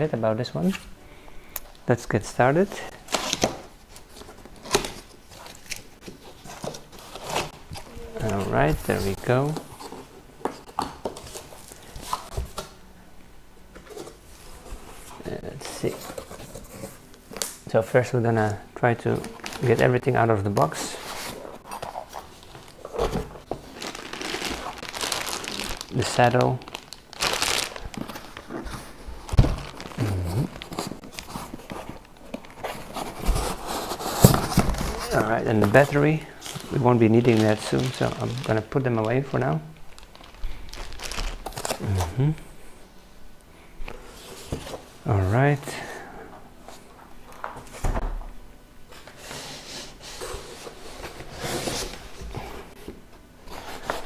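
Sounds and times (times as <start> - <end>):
packaging rustling: 2.7 - 12.8, 18.4 - 42.2.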